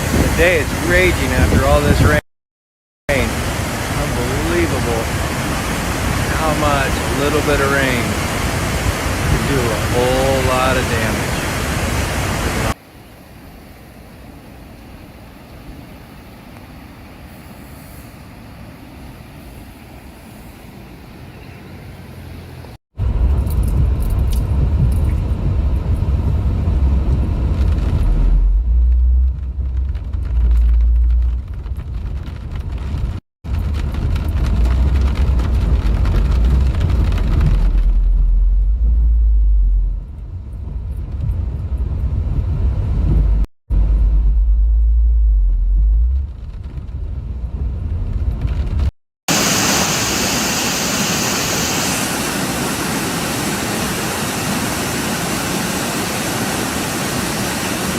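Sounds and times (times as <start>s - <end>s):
rushing floodwater: 0.0s - 2.2s, 3.1s - 14.2s, 49.3s - 57.9s
low rumble: 23.0s - 52.7s.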